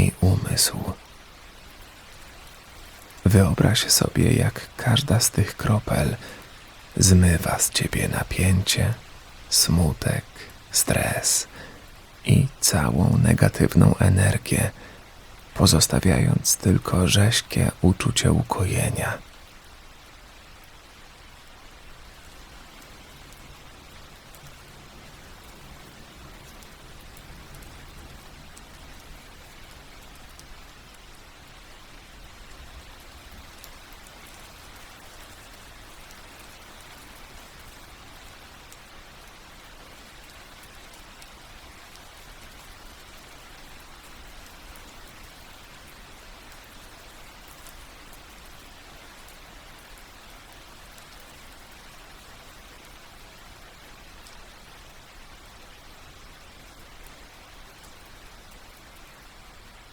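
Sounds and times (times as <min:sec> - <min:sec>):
raindrops ticking: 0:00.0 - 0:19.7
steady rain: 0:00.0 - 0:59.9.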